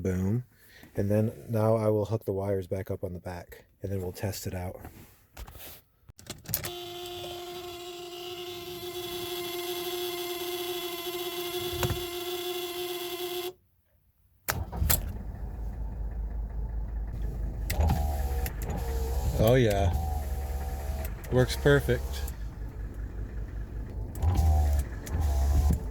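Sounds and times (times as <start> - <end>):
electric window motor whine: 6.7 - 13.5, 15.1 - 25.9
lower dull motor running: 15.0 - 25.9.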